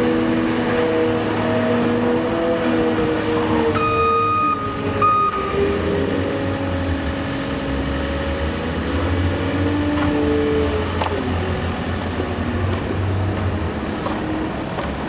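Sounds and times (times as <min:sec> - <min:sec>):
heavy vehicle engine humming: 0:00.0 - 0:15.0
reversing alarm beeps: 0:03.8 - 0:05.6.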